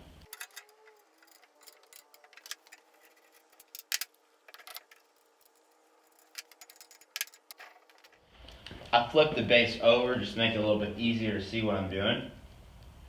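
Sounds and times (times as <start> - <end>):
metal clinks and clacks: 0.3 - 8.2.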